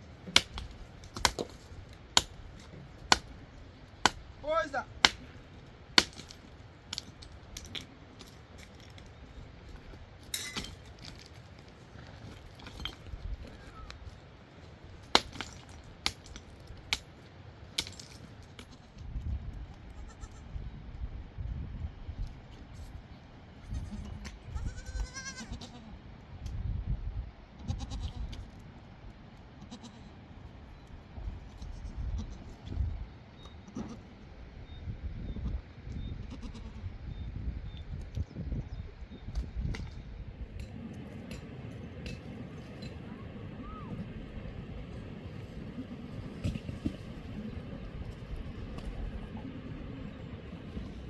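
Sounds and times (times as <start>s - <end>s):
livestock bleating: 20.0s - 20.4s, 23.6s - 26.0s, 29.6s - 30.1s, 36.3s - 36.8s.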